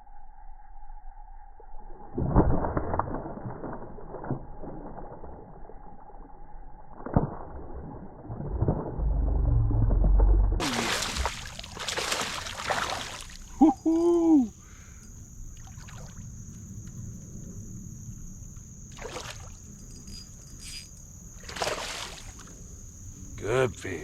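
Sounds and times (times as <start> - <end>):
loud low rumble: 8.3 - 10.7.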